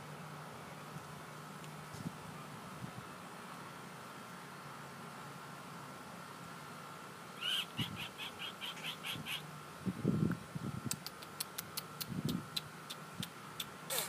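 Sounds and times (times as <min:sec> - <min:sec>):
high chirping bird calls: 0:07.4 - 0:09.5.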